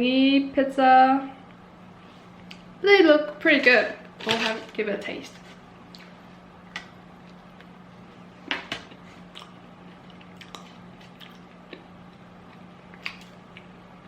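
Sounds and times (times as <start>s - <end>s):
steady low hum: 0.0s - 14.0s
person chewing pizza: 8.9s - 13.8s.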